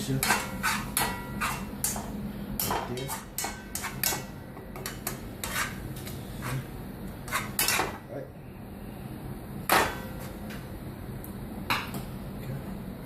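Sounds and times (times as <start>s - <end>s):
utensil scraping a pan: 0.1s - 2.0s, 4.9s - 8.0s.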